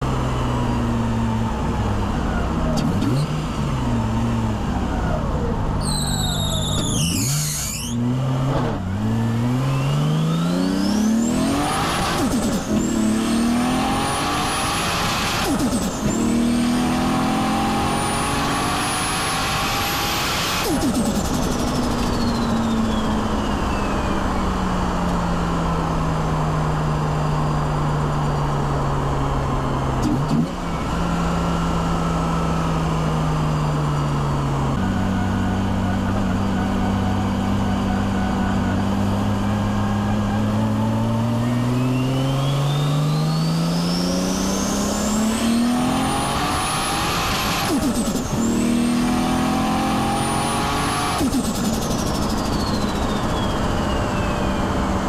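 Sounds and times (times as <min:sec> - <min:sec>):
car engine accelerating: 0:00.0 - 0:55.0
turbo whistle: 0:05.8 - 0:08.0.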